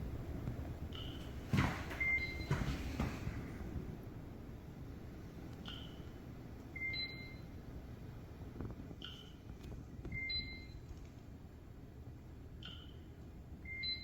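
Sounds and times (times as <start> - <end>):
low steady rumble: 0.0 - 10.8.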